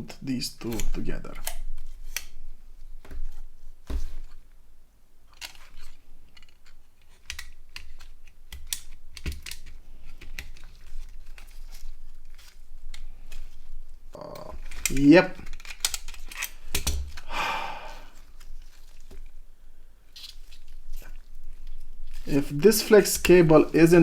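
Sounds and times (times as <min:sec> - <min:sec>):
plastic phone parts clicking: 0:00.6 - 0:02.4, 0:05.3 - 0:13.6, 0:14.4 - 0:17.3.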